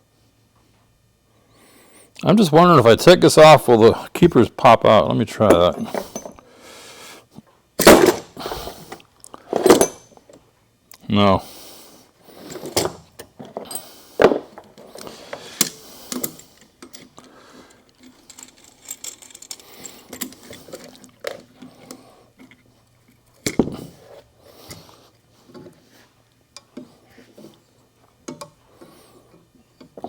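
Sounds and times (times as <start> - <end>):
metal parts clinking and knocking: 7.8 - 8.4, 9.5 - 10.2, 12.5 - 21.7.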